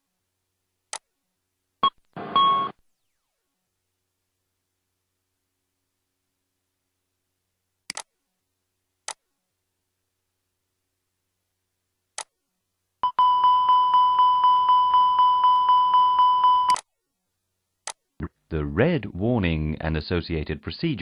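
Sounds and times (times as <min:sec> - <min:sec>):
short clicks: 0:07.9 - 0:08.1
pulsing cockpit alarm chime: 0:13.0 - 0:16.8.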